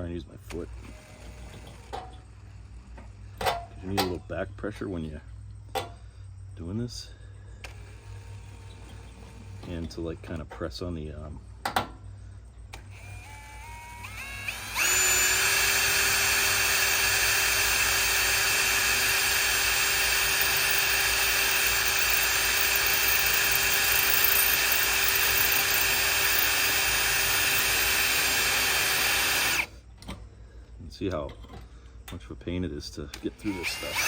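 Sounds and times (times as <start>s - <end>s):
power drill boring through metal: 12.8s - 29.8s, 33.2s - 34.0s.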